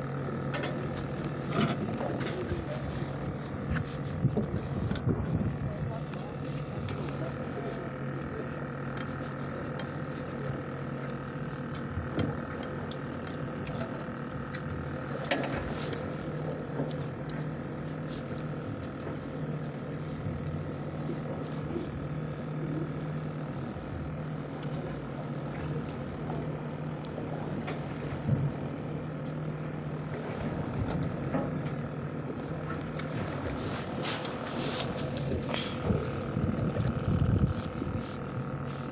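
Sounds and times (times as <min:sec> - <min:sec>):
boat machinery humming: 0:00.0 - 0:38.9.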